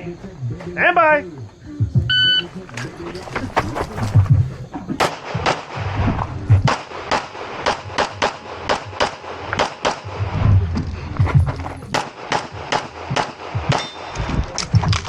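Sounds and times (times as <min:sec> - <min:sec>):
rapid gunshots: 0:05.0 - 0:06.0, 0:06.6 - 0:10.5, 0:11.8 - 0:14.0.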